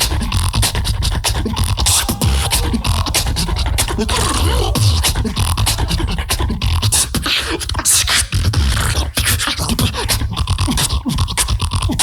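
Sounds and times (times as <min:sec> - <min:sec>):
beatboxing: 0:00.0 - 0:12.0
gliding vocal tone: 0:01.6 - 0:06.6
heavy bass line: 0:01.8 - 0:06.0.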